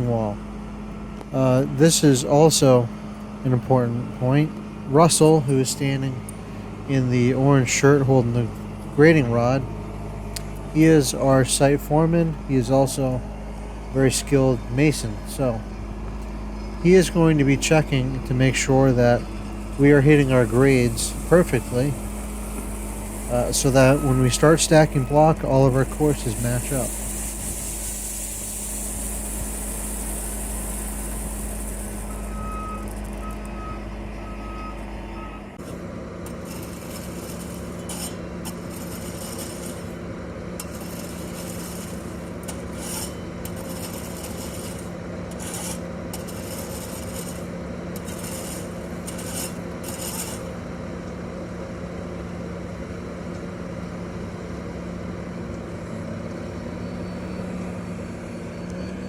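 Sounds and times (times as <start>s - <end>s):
heavy diesel machinery running: 0.0s - 59.0s
rasping hissing scrape: 18.6s - 33.2s, 36.3s - 40.0s, 40.6s - 50.5s
backup alarm beeping: 21.1s - 26.6s, 31.8s - 35.6s.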